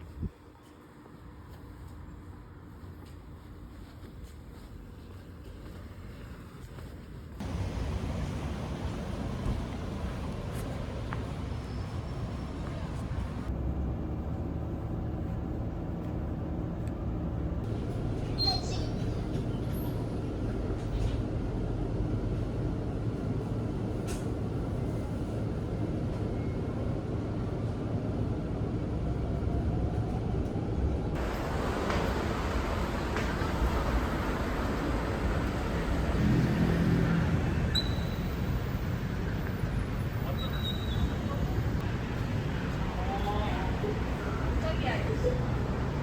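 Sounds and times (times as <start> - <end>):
vehicle rumble from inside: 7.4 - 46.0
brief squeal: 18.3 - 19.2, 37.7 - 38.3, 40.3 - 41.4.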